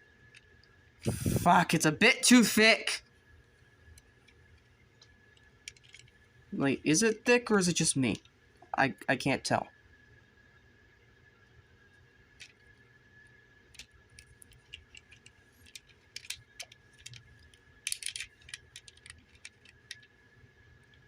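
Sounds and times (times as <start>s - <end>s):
hard plastic parts clicking: 5.4s - 6.2s, 13.8s - 20.1s.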